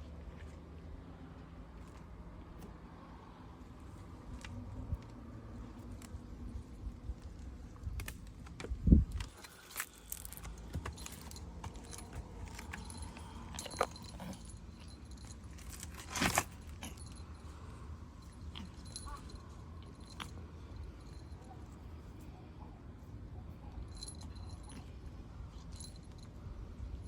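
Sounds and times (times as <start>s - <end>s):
light metallic jingling: 9.1s - 22.0s, 23.6s - 27.0s.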